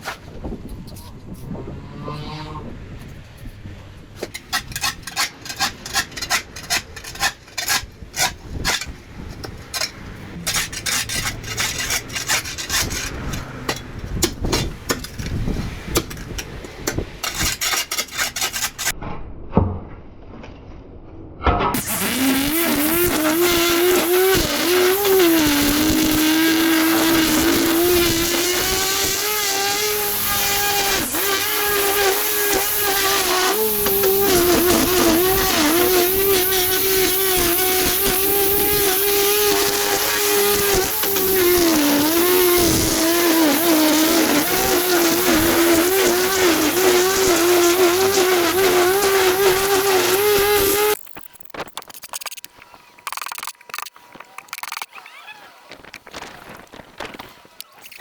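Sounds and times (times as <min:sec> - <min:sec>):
line trimmer whining: 0:21.8 - 0:51.0.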